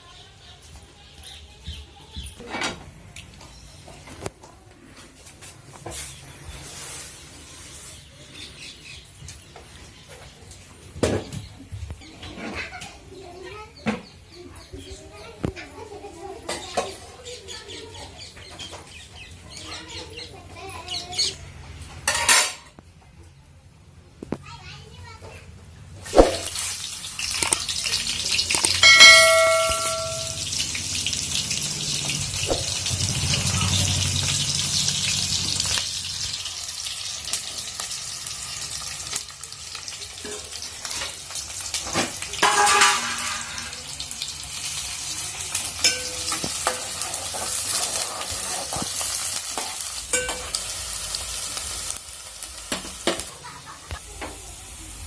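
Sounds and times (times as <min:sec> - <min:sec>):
food sizzling in hot oil: 0:26.1 - 0:55.0
short ringing sound: 0:28.8 - 0:30.5
spoon scraping a pan: 0:45.8 - 0:50.6.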